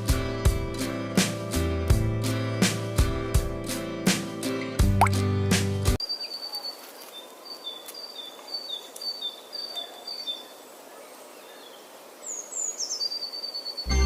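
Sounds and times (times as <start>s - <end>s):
high bird-like chirps: 12.3s - 14.0s.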